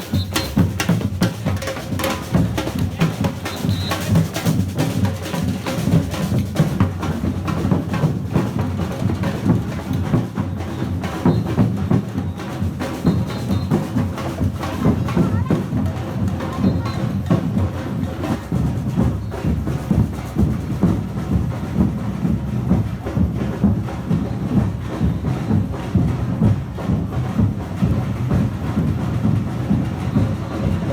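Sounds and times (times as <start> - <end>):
bass drums: 0.0 - 30.9
percussion group drumming: 0.0 - 30.9.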